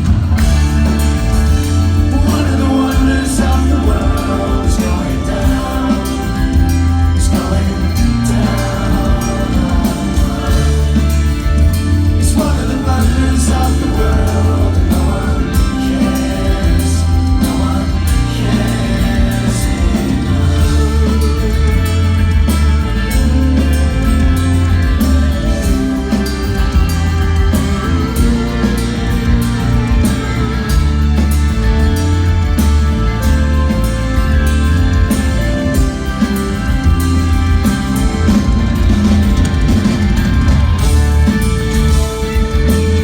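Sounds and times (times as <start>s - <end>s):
live progressive rock band: 0.0s - 43.0s
person singing: 0.9s - 31.7s.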